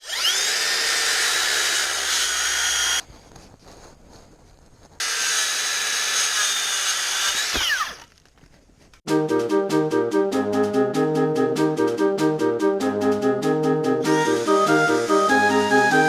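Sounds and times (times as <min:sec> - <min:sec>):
circular saw cutting wood: 0:00.0 - 0:03.0, 0:05.0 - 0:08.3, 0:14.0 - 0:16.0.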